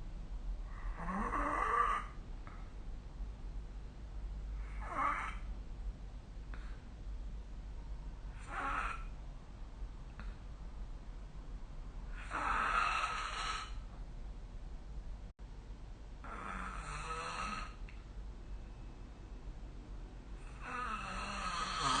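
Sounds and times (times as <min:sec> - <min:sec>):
person snoring: 0:00.7 - 0:02.2, 0:08.4 - 0:09.1, 0:12.1 - 0:13.8, 0:16.2 - 0:17.8, 0:20.4 - 0:22.0.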